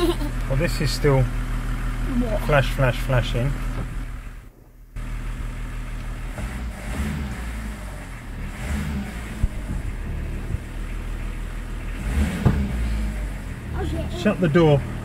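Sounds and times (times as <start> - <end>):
car engine idling: 0.0 - 15.0.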